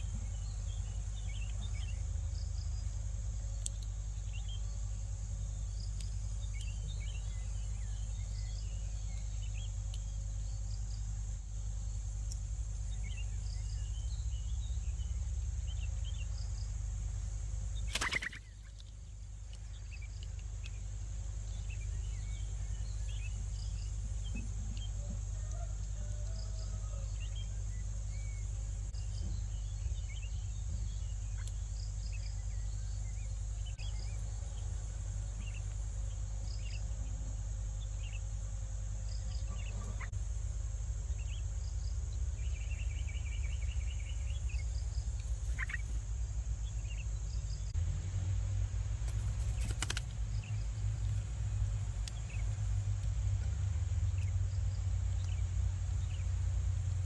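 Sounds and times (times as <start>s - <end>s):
high insect drone: 0.0s - 57.0s
low steady rumble: 0.0s - 57.0s
bird chirps: 17.8s - 18.9s, 42.4s - 46.0s.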